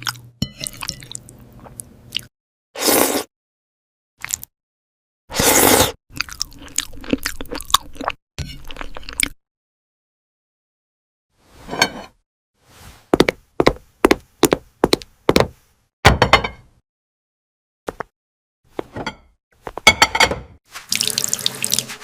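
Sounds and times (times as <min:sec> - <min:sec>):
cookie crunching and chewing: 0:06.1 - 0:08.1.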